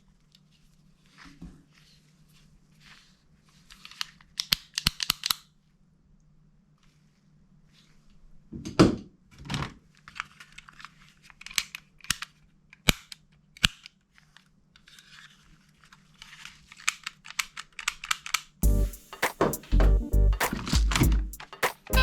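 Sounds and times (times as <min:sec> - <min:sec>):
toy gun clicks: 0:04.4 - 0:05.5, 0:16.8 - 0:18.5.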